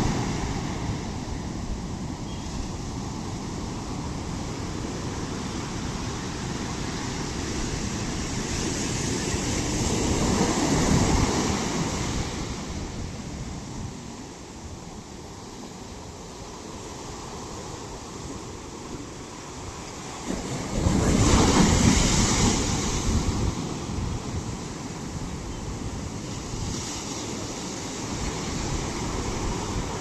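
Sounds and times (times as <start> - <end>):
surf washing on shore: 0.0 - 30.0
wave crashing: 19.8 - 25.1.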